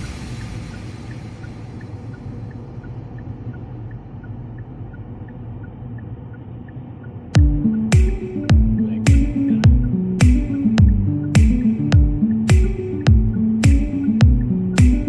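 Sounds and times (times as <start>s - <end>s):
car cabin road and engine rumble: 0.0s - 7.8s
turn signal ticking: 0.0s - 15.0s
music with sharp hits: 7.4s - 15.0s.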